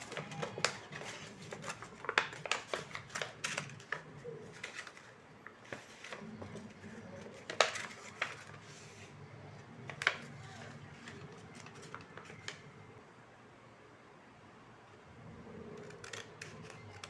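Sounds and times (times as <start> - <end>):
paper being handled: 0.0 - 9.2, 9.8 - 12.7, 15.8 - 17.0.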